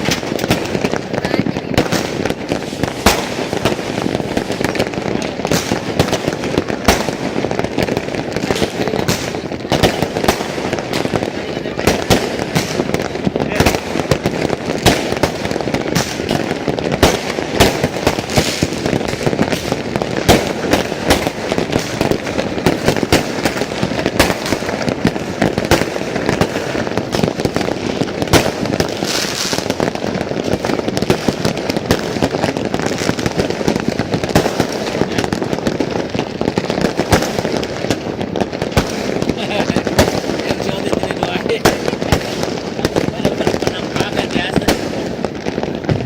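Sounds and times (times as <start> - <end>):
crowd voices: 0.0 - 19.8
fireworks bangs and crackles: 0.0 - 46.0.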